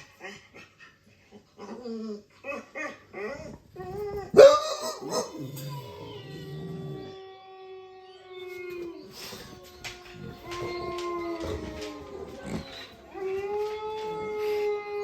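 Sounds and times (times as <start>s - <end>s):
dog howling: 3.2s - 15.0s
dog crying out: 4.0s - 6.2s.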